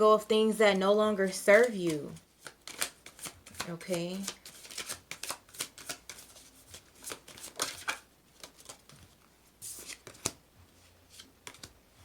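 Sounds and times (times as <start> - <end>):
cards being shuffled: 1.3 - 11.8.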